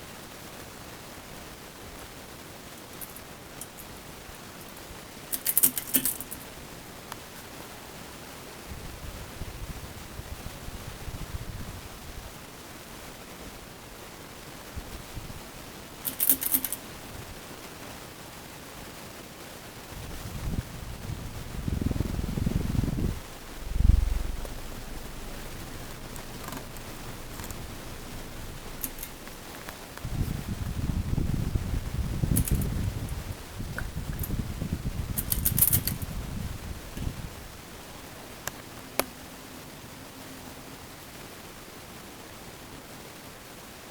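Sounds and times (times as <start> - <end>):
ceiling fan airy hiss: 0.0 - 43.9
ceiling fan whoosh: 19.9 - 37.6
low rumbling bumps: 20.5 - 35.2
low thump: 23.6 - 25.5.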